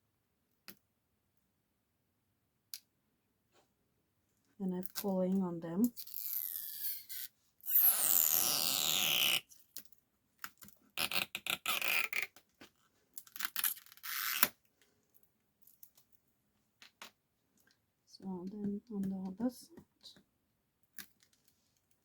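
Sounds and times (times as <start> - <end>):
adhesive strips tearing and squeaking: 6.0 - 9.8, 10.4 - 12.4, 13.2 - 14.6.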